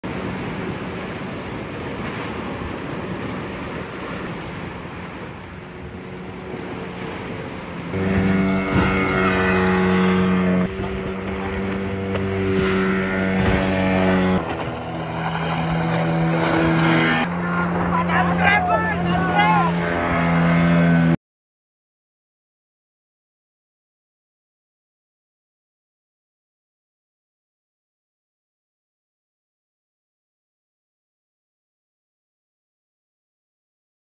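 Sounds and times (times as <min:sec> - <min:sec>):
engine running steadily: 0:00.0 - 0:21.2.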